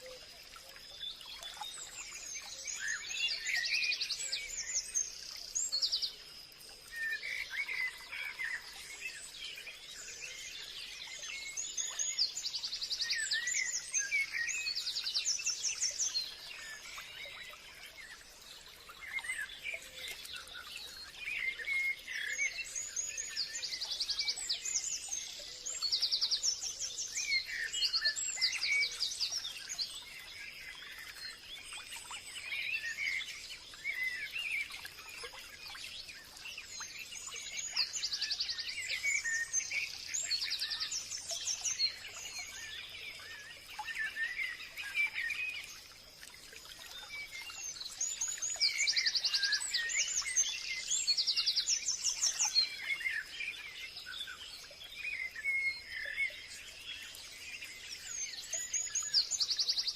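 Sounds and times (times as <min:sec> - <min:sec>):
songbirds chirping and trilling: 0:00.0 - 0:59.9.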